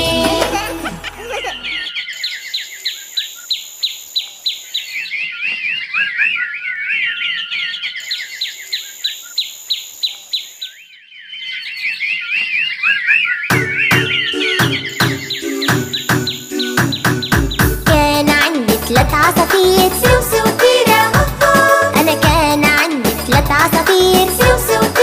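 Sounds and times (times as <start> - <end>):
birds chirping and trilling: 1.0 - 17.9.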